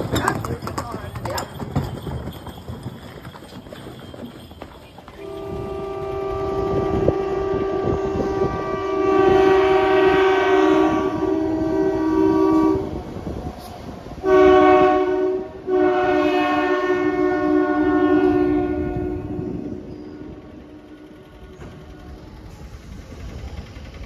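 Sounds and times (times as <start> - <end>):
train horn blasts: 5.2 - 13.1, 14.2 - 22.2.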